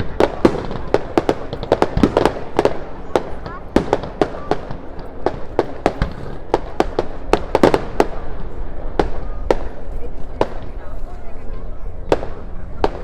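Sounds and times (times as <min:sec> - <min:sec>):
fireworks bangs and cracks: 0:00.0 - 0:13.0.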